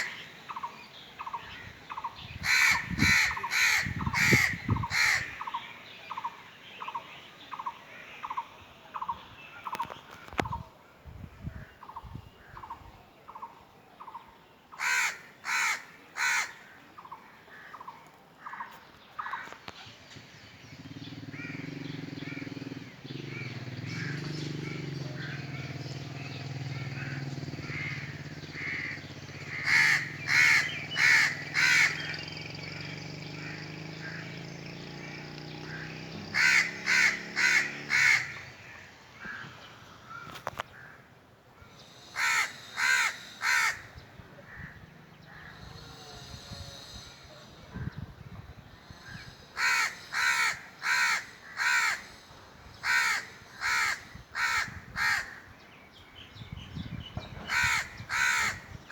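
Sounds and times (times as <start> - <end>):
crows cawing: 2.4 - 5.5, 14.8 - 19.6, 21.3 - 21.7, 26.8 - 32.2, 35.6 - 41.1, 42.0 - 45.9, 49.0 - 52.2, 52.8 - 55.5, 57.4 - 58.9.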